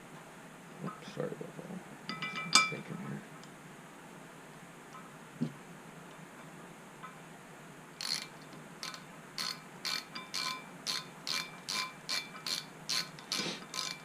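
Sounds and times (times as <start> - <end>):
ratchet wrench clicking: 8.0 - 14.0.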